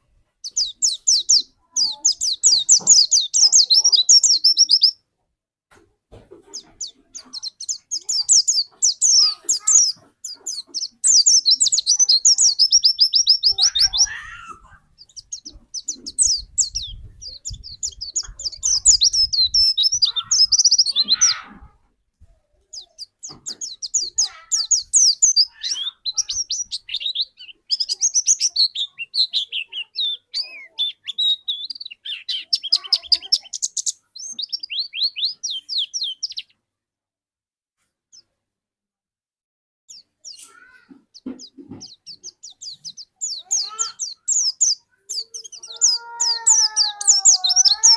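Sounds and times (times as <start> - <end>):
songbird trilling: 0.5 - 5.0, 6.6 - 21.5, 22.8 - 36.5, 40.0 - 47.9.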